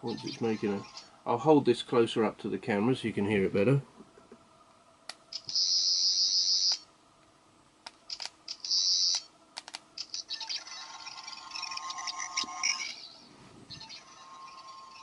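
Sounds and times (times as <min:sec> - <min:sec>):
toy electronic buzzing tone: 0:00.1 - 0:01.1, 0:05.3 - 0:06.8, 0:08.5 - 0:09.3, 0:10.0 - 0:15.0
sharp clicks: 0:07.8 - 0:10.3
warbling electronic tones: 0:10.0 - 0:15.0.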